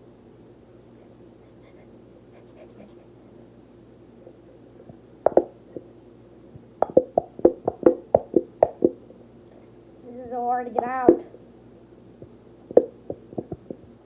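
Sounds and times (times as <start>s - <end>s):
plastic bottle knocking: 5.3s - 5.5s, 6.8s - 9.0s.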